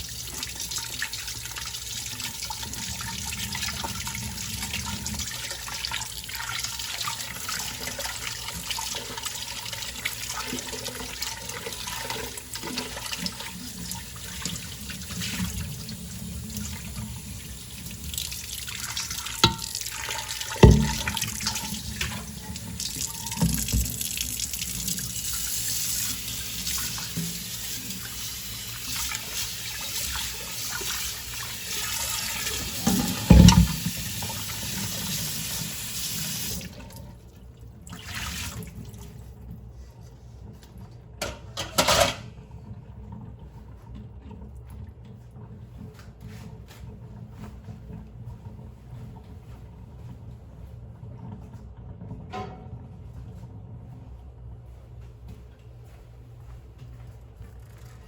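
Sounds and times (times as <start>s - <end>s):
tap water running into sink: 0.0s - 37.2s
dishes knocking and clattering: 19.4s - 19.8s, 20.6s - 21.6s, 32.8s - 33.9s, 41.2s - 42.3s, 52.3s - 52.8s.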